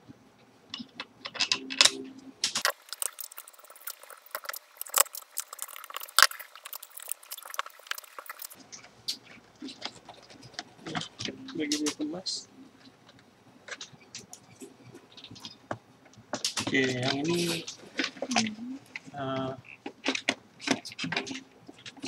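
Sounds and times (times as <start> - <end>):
small parts clicking and scraping: 0.7 - 12.1.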